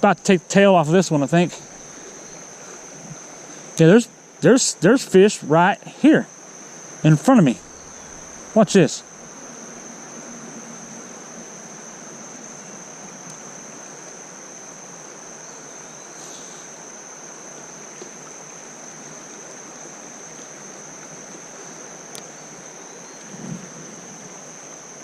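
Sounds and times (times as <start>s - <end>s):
creek water running over rocks: 0.0s - 25.0s
faint ticks: 13.0s - 14.2s, 19.4s - 22.3s.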